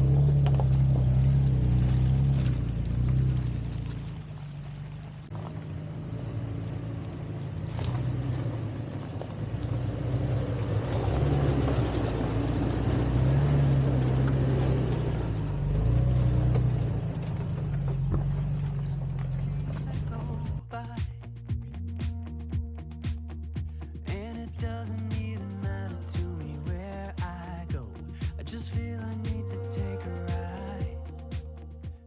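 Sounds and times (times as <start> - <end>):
water splashing around tyres: 0.0 - 21.2
engine running at crawling speed: 0.0 - 32.0.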